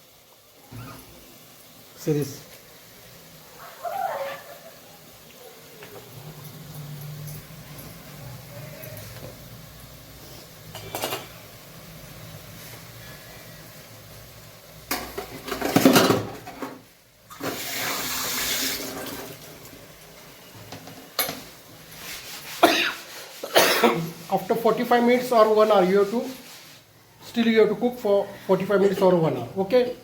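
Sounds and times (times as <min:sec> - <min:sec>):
water running: 0:00.0 - 0:30.0
pots and utensils clattering: 0:10.2 - 0:11.4, 0:14.9 - 0:19.5, 0:20.6 - 0:21.6.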